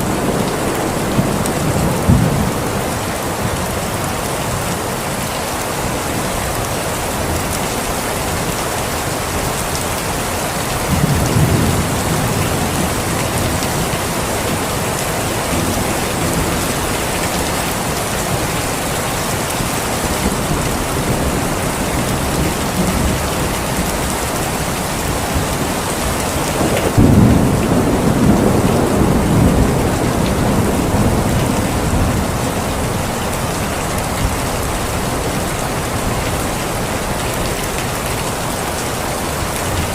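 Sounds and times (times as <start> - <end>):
steady rain: 0.0 - 39.9
low rolls of thunder: 26.3 - 33.2.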